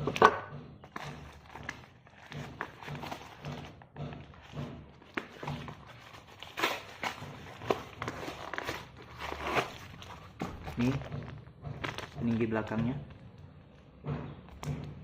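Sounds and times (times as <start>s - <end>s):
handling clicks and knocks: 10.0s - 13.2s.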